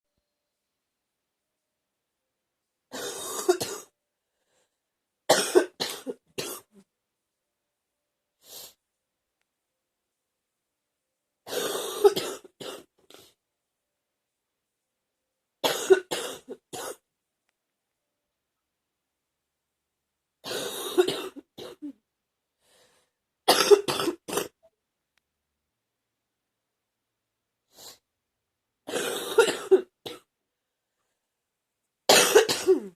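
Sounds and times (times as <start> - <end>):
woman coughing: 5.3 - 6.7, 11.5 - 12.9, 15.6 - 17.0, 20.5 - 22.0, 23.5 - 24.6, 28.9 - 30.3, 32.1 - 32.9.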